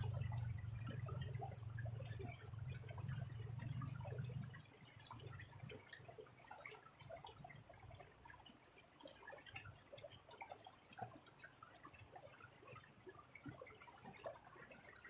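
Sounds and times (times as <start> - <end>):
low water murmur: 0.0 - 15.0
stream trickling and dripping: 0.0 - 15.0.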